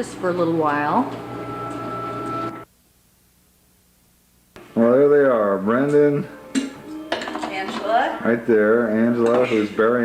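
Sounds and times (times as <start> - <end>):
mechanical hum: 0.0 - 10.0.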